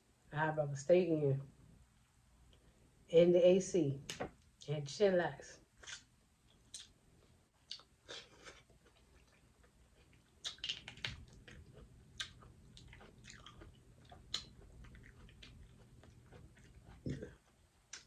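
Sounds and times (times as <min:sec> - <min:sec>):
person chewing food: 0:05.8 - 0:18.0.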